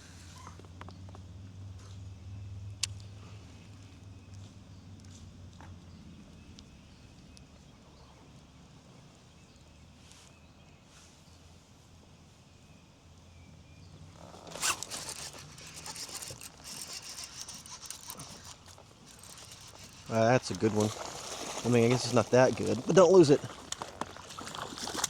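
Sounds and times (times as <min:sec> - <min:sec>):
small ticks: 0:02.8 - 0:07.5, 0:14.2 - 0:22.2
fishing reel rattling: 0:14.2 - 0:23.8.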